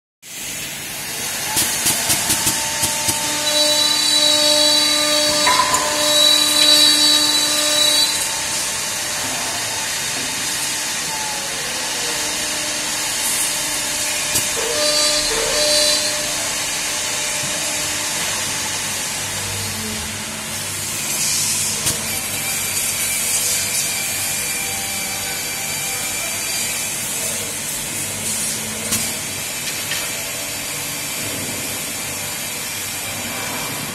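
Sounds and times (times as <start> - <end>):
mortising machine running: 1.0 - 22.5.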